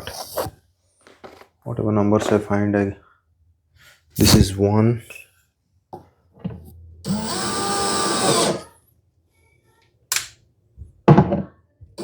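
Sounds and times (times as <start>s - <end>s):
power drill driving screw: 7.1s - 8.7s.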